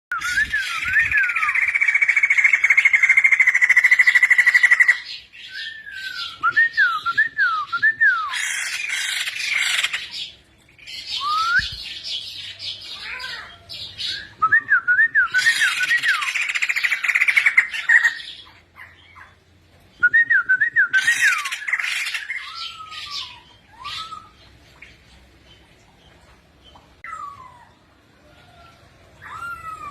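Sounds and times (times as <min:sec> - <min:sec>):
whistled bird notes: 0:00.1 - 0:01.8, 0:11.0 - 0:12.0, 0:13.8 - 0:16.9, 0:20.0 - 0:24.4
harsh rattling bird chatter: 0:01.5 - 0:05.3, 0:08.4 - 0:10.3, 0:16.3 - 0:19.2.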